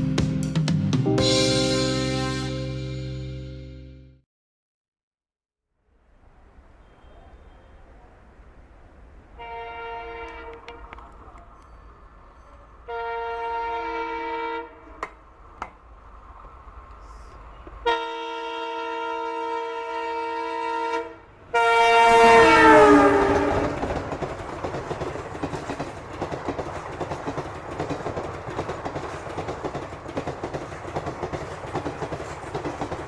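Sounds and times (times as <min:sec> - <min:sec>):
locomotive air horn blasts: 0:01.3 - 0:03.0, 0:09.4 - 0:10.9, 0:12.8 - 0:15.1, 0:17.8 - 0:24.0
train rumble: 0:06.0 - 0:33.0.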